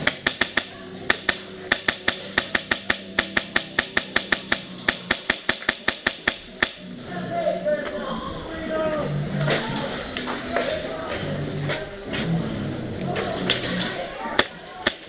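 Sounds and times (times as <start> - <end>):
airsoft gun rapid shots: 0.0 - 6.8.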